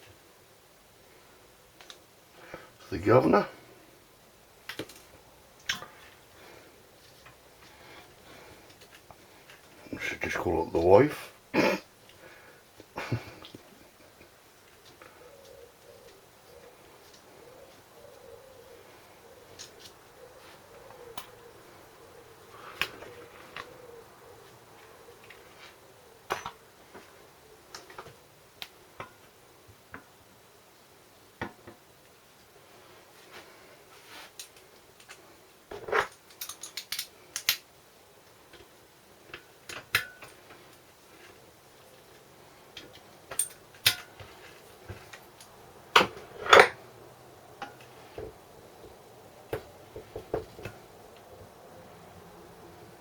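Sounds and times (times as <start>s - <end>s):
tools and metal parts clicking: 35.8s - 37.6s, 43.3s - 44.3s.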